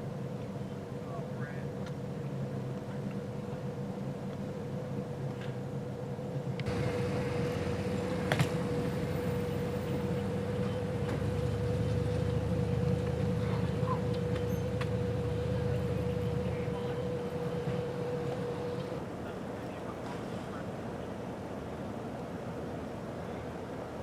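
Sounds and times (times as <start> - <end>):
faint steady whine: 0.0 - 24.0
car engine and road rumble: 6.5 - 19.1.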